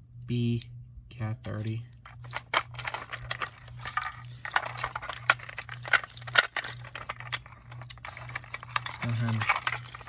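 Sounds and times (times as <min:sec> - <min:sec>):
keys jingling: 0:02.1 - 0:10.0.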